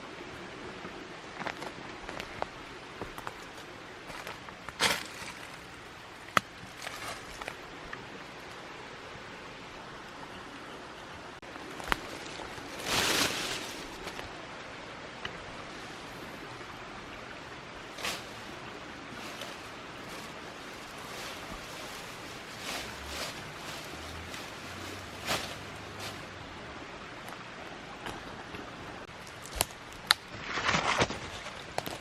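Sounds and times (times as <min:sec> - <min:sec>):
outdoor background hiss: 0:00.0 - 0:32.0
rustle: 0:00.0 - 0:32.0.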